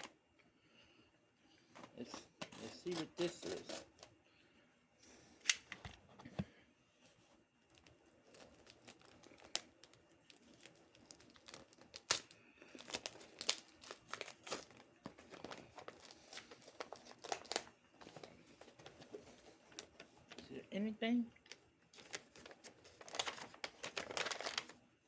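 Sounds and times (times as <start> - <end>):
paper crinkling and tearing: 2.0 - 4.1, 7.8 - 20.5, 21.4 - 24.9.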